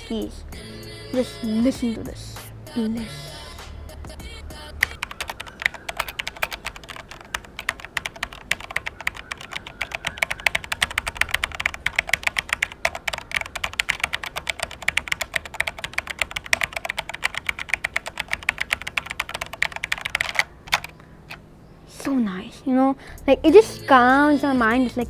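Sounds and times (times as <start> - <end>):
fast typing on mechanical keyboard: 4.8 - 20.9.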